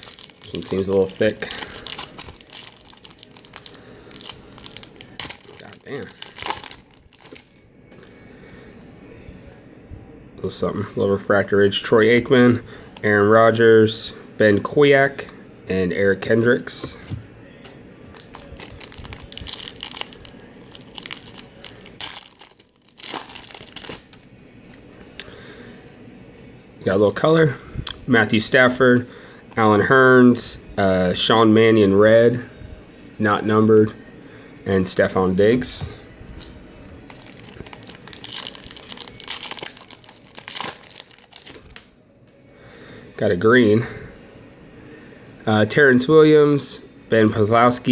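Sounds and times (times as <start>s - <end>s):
foil wrapper crinkling and tearing: 0.0s - 7.7s, 18.1s - 24.8s, 37.1s - 41.9s.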